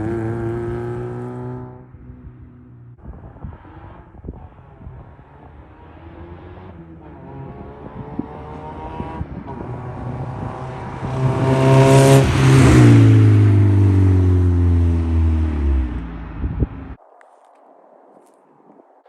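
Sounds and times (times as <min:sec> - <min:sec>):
car driving past: 0:03.4 - 0:16.4.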